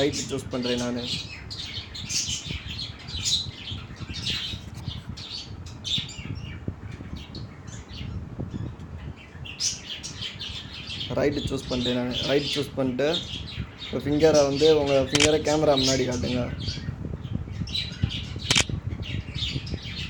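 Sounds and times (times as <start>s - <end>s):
low steady background noise: 0.0s - 20.0s
small birds chirping: 0.0s - 20.0s.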